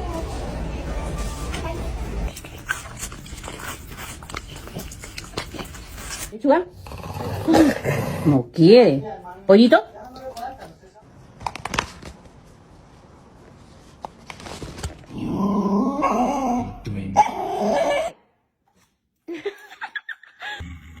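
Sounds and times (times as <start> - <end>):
dog grumbling barks: 6.8 - 8.5.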